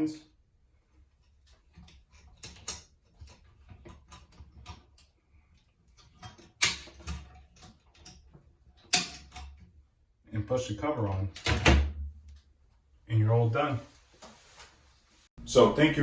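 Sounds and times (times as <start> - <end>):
metal springs clicking: 1.2 - 9.7.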